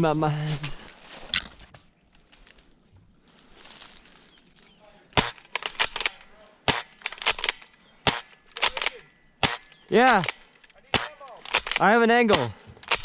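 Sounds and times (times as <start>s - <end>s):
airsoft gun shots: 6.7s - 13.0s.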